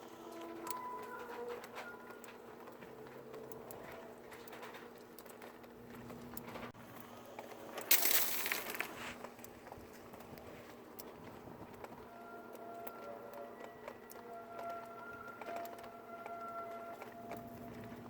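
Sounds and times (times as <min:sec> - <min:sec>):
faint screeching tones: 0:00.0 - 0:02.5
melting ice dripping: 0:00.0 - 0:13.0.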